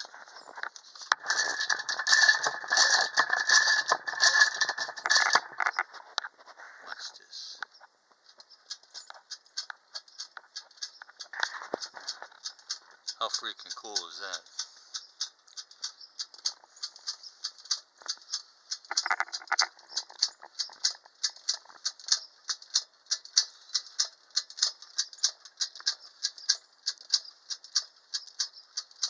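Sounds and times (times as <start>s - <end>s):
clockwork clatter: 0.0s - 6.0s, 8.4s - 29.0s
clockwork toy ticking: 7.6s - 29.0s.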